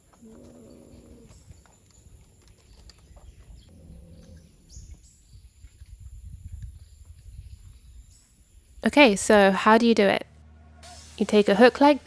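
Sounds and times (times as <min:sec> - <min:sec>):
low wind rumble on microphone: 0:00.3 - 0:09.8.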